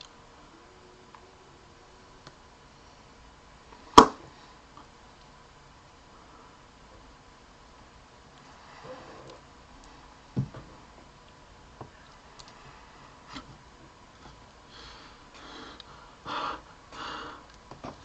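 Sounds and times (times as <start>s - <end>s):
short breaths: 14.7s - 17.5s.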